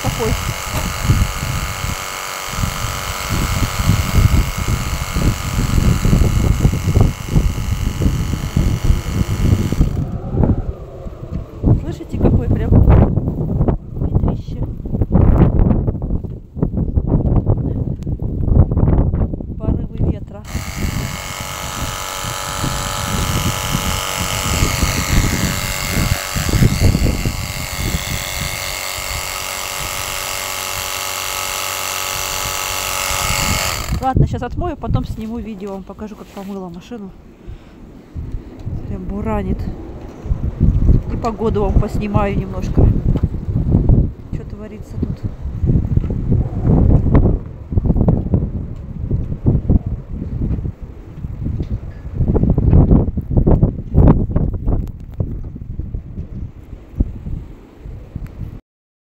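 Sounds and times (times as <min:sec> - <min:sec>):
electric pump spraying water: 0:00.0 - 0:10.2, 0:20.4 - 0:34.2
wind buffeting microphone: 0:00.0 - 0:58.6.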